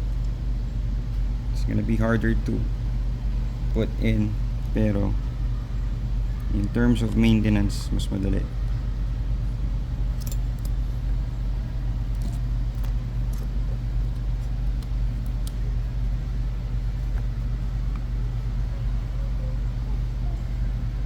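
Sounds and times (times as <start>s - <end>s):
low background rumble: 0.0s - 21.0s
faint clicks of small parts: 12.1s - 13.5s.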